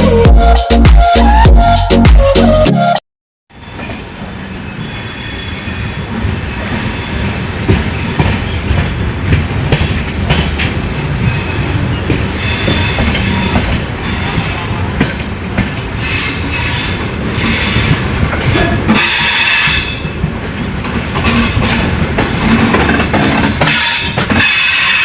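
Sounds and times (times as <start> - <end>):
train wheels rumbling on rails: 3.5 - 25.0
wheels clacking over rail joints: 6.1 - 25.0.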